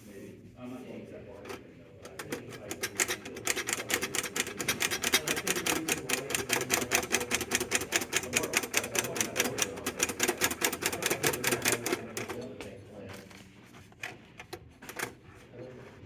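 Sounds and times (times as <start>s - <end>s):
toy typewriter key clacks: 2.1s - 12.4s.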